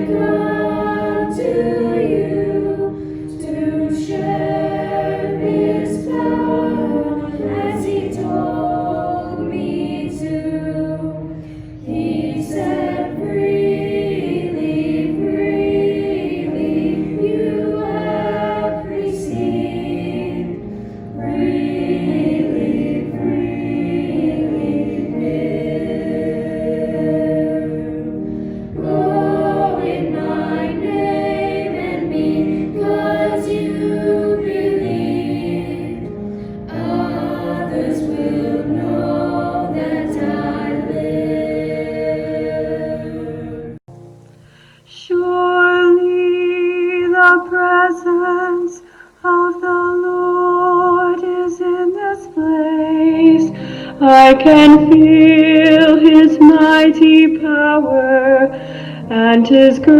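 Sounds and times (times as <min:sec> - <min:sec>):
choir singing worship song: 0:00.0 - 0:59.9
singers breathing: 0:02.9 - 0:03.4, 0:11.3 - 0:12.0, 0:20.6 - 0:21.2, 0:28.2 - 0:28.8, 0:36.1 - 0:36.7, 0:44.2 - 0:44.9, 0:48.8 - 0:49.2, 0:53.5 - 0:54.1, 0:58.5 - 0:59.1.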